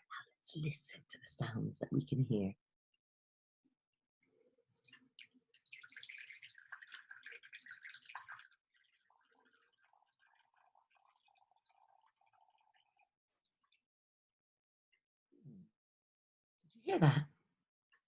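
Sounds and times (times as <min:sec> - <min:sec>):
water pouring into bowl: 0:04.2 - 0:13.8
water trickling: 0:04.2 - 0:13.8.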